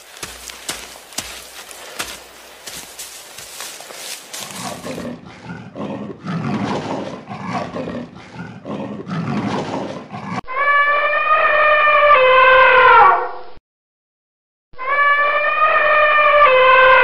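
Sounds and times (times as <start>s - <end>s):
rough animal calls: 0.0s - 13.2s.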